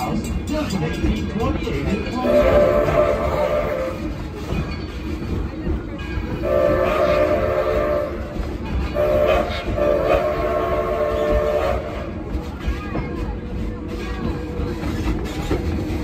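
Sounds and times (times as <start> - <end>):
low rumble of moving train: 0.0 - 16.0
steam locomotive whistle: 2.2 - 4.2, 6.4 - 12.2.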